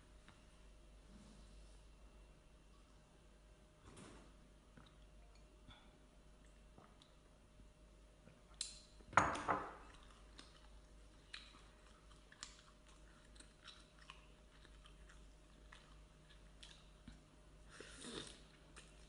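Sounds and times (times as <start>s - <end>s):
person chewing food: 9.7s - 19.0s.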